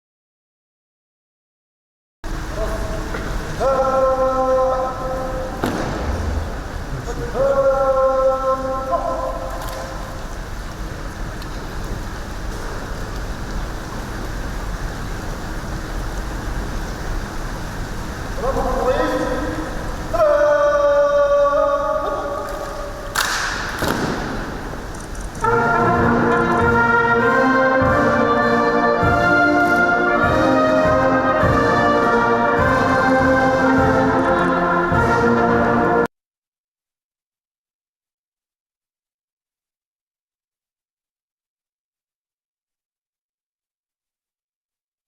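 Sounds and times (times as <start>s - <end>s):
steady rushing noise: 2.3s - 8.0s, 22.2s - 36.1s
brass band playing held chords: 25.4s - 36.1s.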